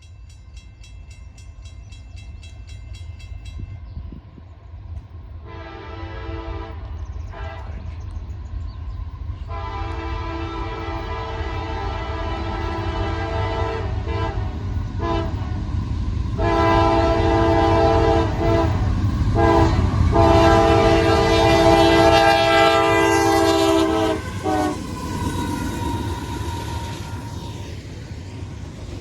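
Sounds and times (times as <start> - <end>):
train rumble: 0.0 - 29.0
locomotive air horn: 5.5 - 7.8, 9.5 - 15.4, 16.4 - 27.7.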